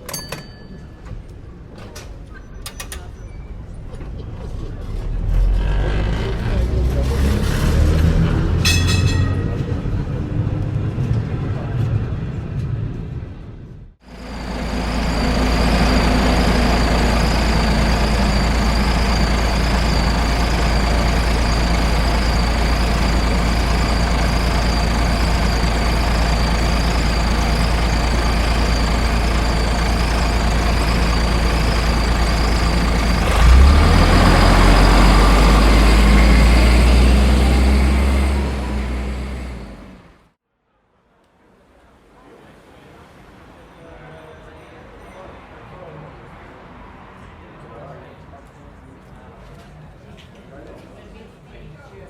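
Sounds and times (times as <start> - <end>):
heavy vehicle engine rumbling: 0.0 - 40.4
high whine: 14.1 - 36.6.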